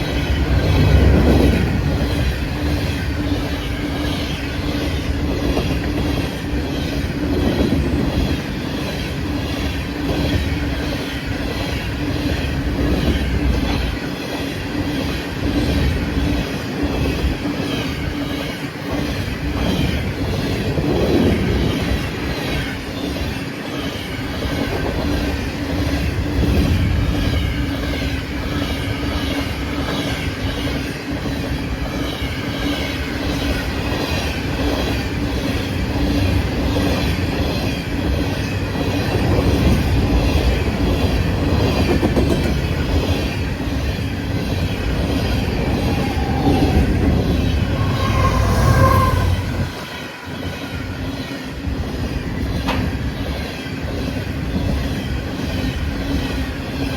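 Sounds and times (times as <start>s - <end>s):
steel wheels rumbling on rail: 0.0s - 56.9s
low hum: 46.8s - 50.0s.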